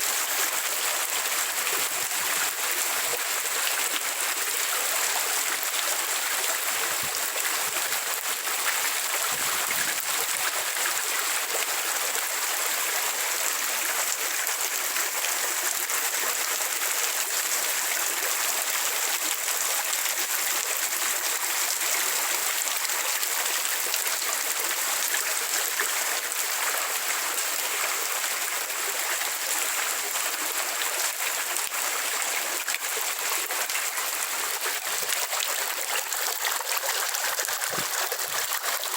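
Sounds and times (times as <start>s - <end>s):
running water trickling: 9.0s - 10.5s, 32.7s - 38.9s.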